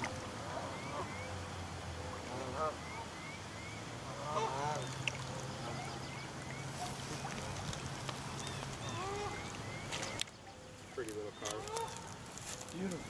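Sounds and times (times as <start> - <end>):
geese honking: 2.2 - 3.1, 4.1 - 5.0, 8.8 - 10.2, 11.3 - 12.2
small birds chirping: 4.4 - 13.0.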